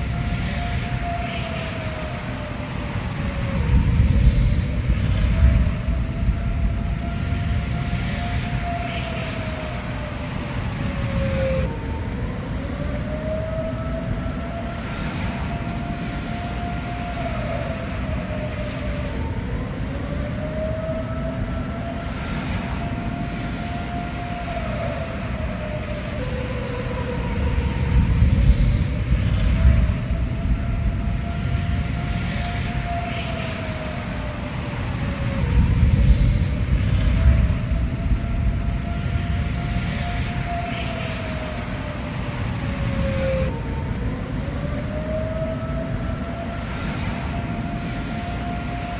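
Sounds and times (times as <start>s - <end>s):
warning siren wailing: 0.0s - 48.9s
low rumbling noise: 33.9s - 48.9s.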